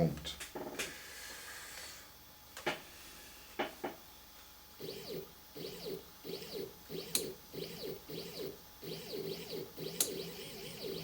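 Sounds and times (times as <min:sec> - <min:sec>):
stepper motor whine: 0:04.8 - 0:11.0.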